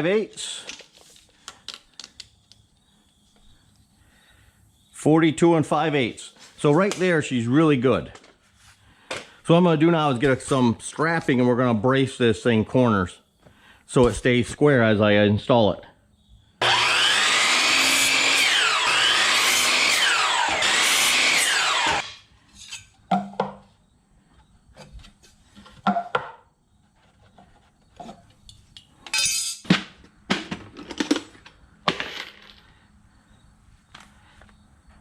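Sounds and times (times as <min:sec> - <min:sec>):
power tool motor running: 0:16.6 - 0:22.2.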